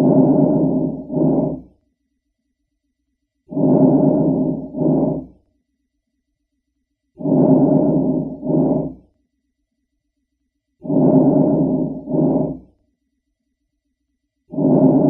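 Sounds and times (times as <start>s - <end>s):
breath sounds through stethoscope: 0.0s - 1.8s, 3.5s - 5.4s, 7.2s - 9.1s, 10.8s - 12.8s, 14.5s - 15.0s.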